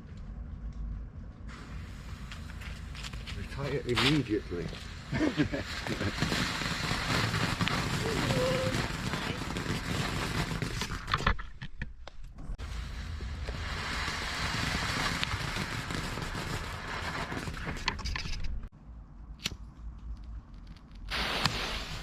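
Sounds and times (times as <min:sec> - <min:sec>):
firework hissing and crackling: 0:01.5 - 0:11.2, 0:12.6 - 0:18.0, 0:21.0 - 0:22.0
sharp crack: 0:02.3 - 0:04.6, 0:20.6 - 0:22.0.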